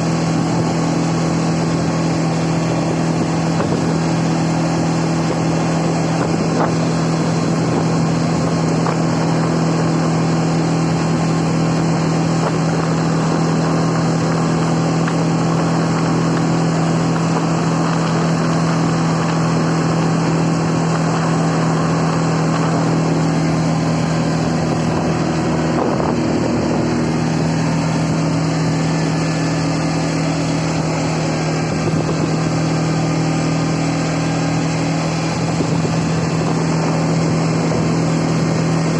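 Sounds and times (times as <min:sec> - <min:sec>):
atv engine droning: 0:00.0 - 0:38.9.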